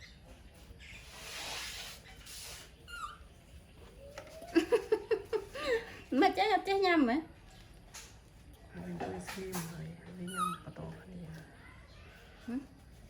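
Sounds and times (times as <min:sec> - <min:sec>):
faint squeak: 0:00.0 - 0:04.5, 0:10.2 - 0:10.8.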